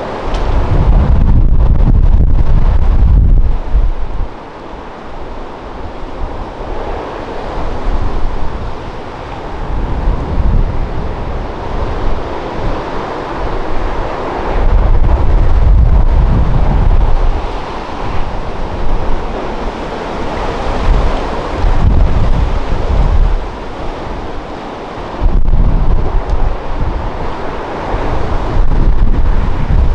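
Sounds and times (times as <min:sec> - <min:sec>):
waves breaking: 0:00.0 - 0:29.9
wind buffeting microphone: 0:00.0 - 0:29.9
deep rumble: 0:00.3 - 0:04.3, 0:09.5 - 0:12.8, 0:13.8 - 0:24.3, 0:25.2 - 0:27.4, 0:28.0 - 0:29.9.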